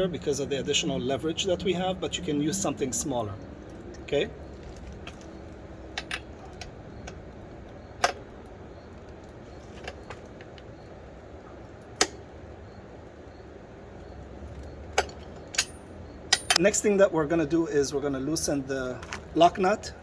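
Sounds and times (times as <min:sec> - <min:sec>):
metallic clinks of breaker bar: 0:14.9 - 0:16.7.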